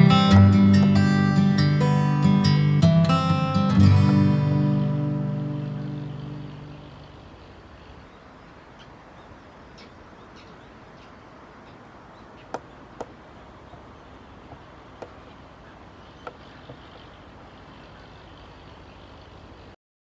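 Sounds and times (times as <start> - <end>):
faint background hiss: 0.0 - 19.8
sharp clicks or taps: 0.8 - 1.0.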